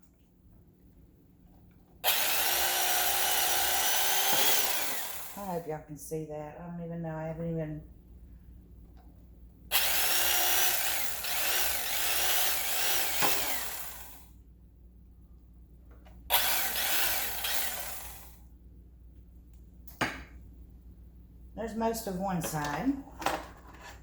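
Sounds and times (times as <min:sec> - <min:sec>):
electric carving knife buzzing: 0:02.0 - 0:05.6, 0:09.7 - 0:14.3, 0:16.3 - 0:18.4.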